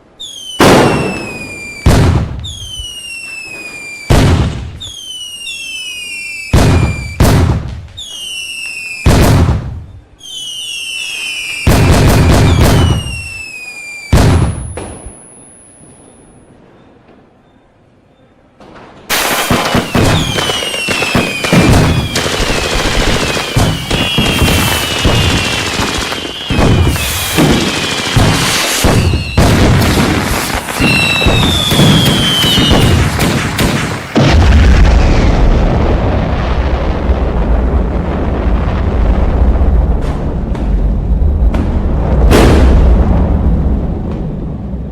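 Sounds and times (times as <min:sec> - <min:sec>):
descending firework whistles: 0:00.0 - 0:17.0, 0:19.1 - 0:35.5
firecrackers banging: 0:00.2 - 0:15.2, 0:18.6 - 0:44.9.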